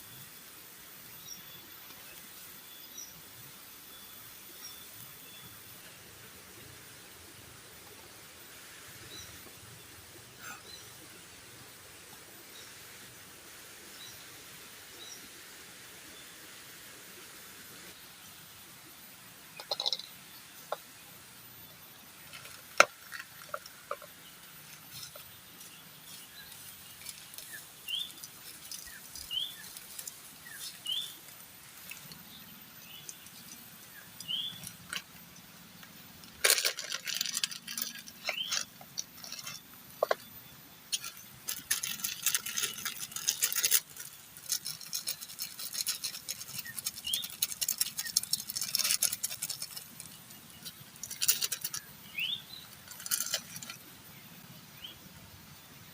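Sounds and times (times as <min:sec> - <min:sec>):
bright crackling patter: 0:22.2 - 0:35.2, 0:40.9 - 0:51.9.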